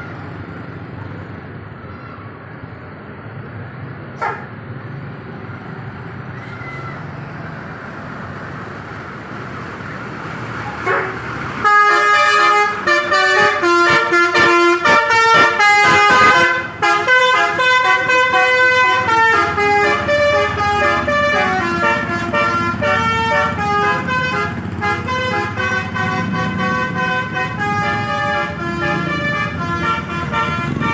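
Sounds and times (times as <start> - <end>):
air horns playing a tune: 11.6 - 30.9.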